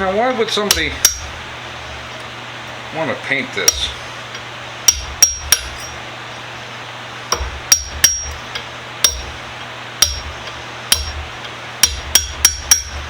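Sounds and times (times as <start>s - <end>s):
hammer tapping on metal: 0.7s - 1.3s, 3.7s - 4.0s, 4.9s - 6.0s, 7.3s - 9.4s, 10.0s - 11.2s, 11.8s - 13.0s.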